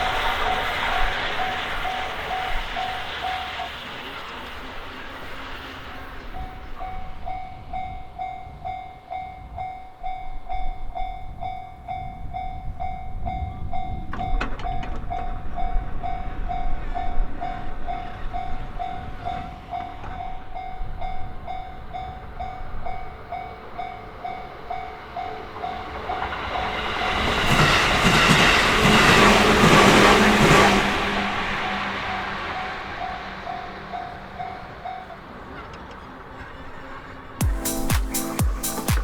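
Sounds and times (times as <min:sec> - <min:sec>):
approaching train rumble: 0:00.0 - 0:39.0
level-crossing electronic bell: 0:37.4 - 0:39.0.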